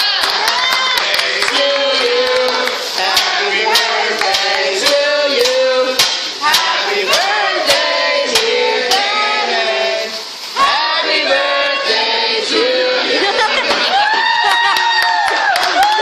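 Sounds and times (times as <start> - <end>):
hands clapping a beat: 0.0 - 9.2, 14.7 - 16.0
group of voices singing: 0.0 - 14.1.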